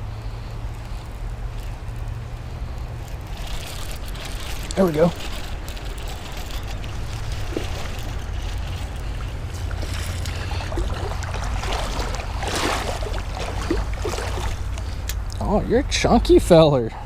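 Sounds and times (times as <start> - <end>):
creek water rushing: 3.2 - 16.1
water splashing: 3.8 - 15.3.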